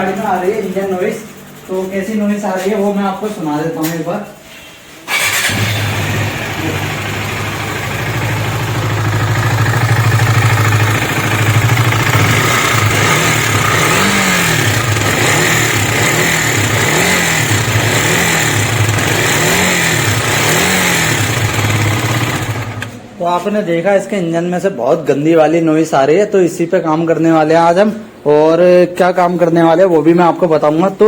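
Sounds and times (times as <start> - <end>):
motorcycle engine running noisily: 5.1 - 23.0.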